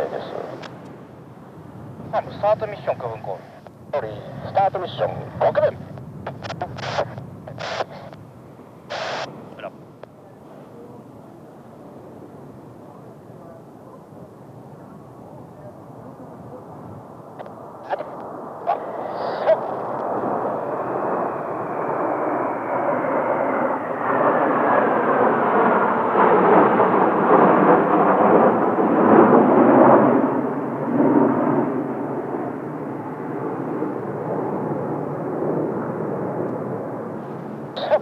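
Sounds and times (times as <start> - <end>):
jet aircraft passing low: 0.0 - 38.0
falling jet engine whine: 17.0 - 38.0.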